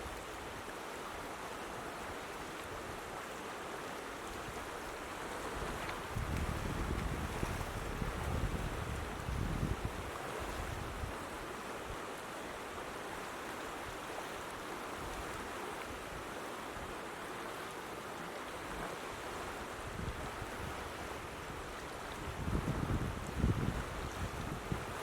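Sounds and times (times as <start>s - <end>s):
fast creek water rushing: 0.0s - 25.0s
wind buffeting microphone: 5.6s - 10.1s, 22.2s - 25.0s.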